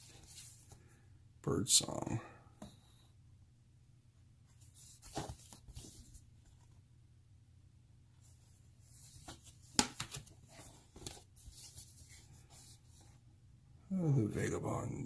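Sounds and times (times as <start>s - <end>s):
cardboard rustling and sliding: 4.6s - 6.7s.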